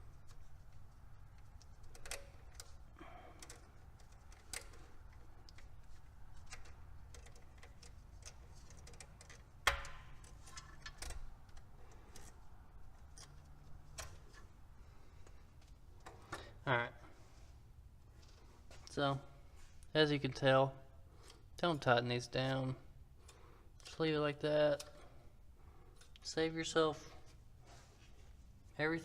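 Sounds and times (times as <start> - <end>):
steady low hum: 0.0 - 29.0
small metallic clicks and taps: 3.4 - 12.4.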